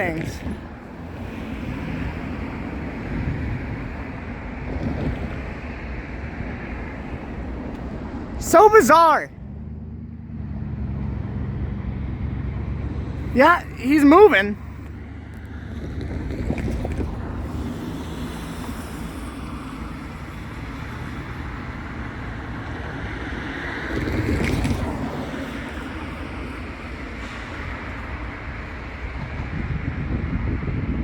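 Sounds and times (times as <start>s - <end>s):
wind on microphone: 0.0s - 8.2s, 15.6s - 21.1s, 29.1s - 31.0s.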